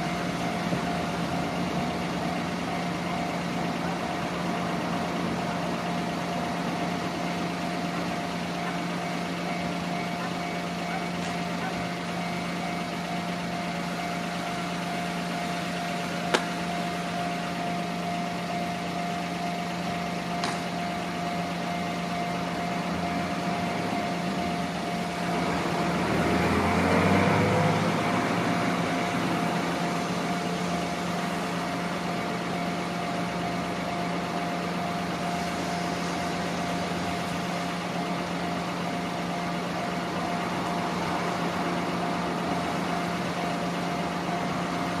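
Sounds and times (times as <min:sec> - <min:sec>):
vehicle engine idling: 0:00.0 - 0:45.0
vehicle passing by: 0:25.5 - 0:28.8.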